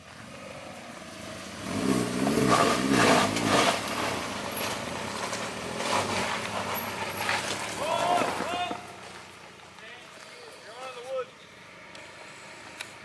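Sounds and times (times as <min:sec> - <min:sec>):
vehicle engine revving: 0:00.0 - 0:09.2.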